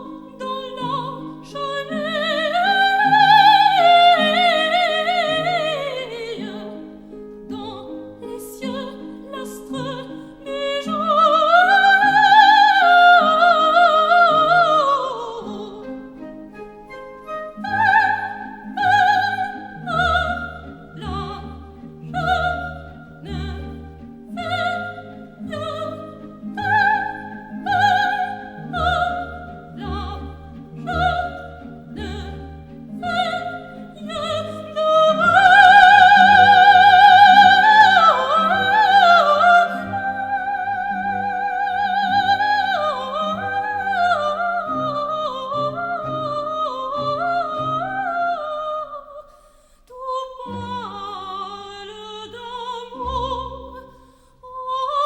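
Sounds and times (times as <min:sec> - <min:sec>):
operatic soprano singing: 0:00.0 - 0:49.3, 0:49.9 - 0:55.0
orchestra playing: 0:10.8 - 0:48.1.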